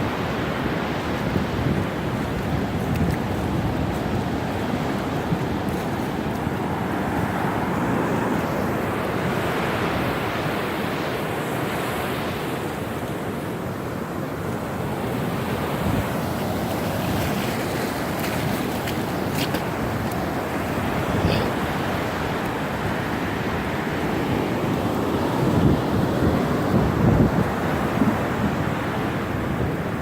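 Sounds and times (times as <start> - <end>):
wind buffeting microphone: 0.0 - 9.0, 15.4 - 30.0
surf breaking on beach: 14.6 - 30.0.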